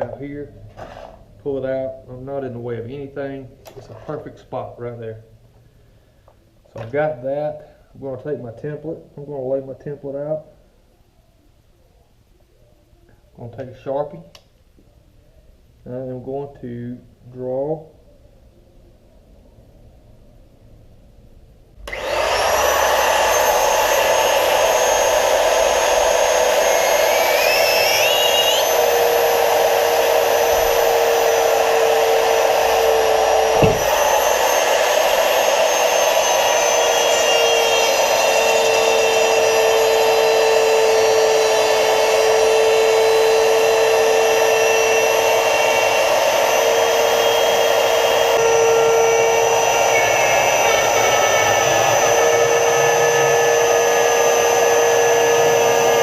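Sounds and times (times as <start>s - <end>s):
electric power tool motor whine: 21.8s - 56.0s.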